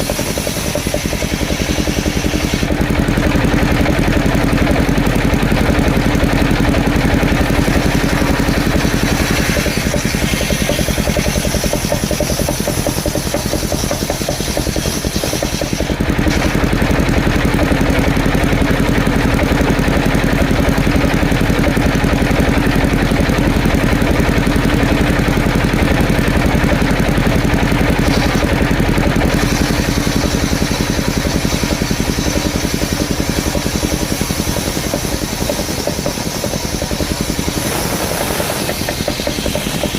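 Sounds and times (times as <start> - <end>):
wood saw engine running: 0.0 - 39.9.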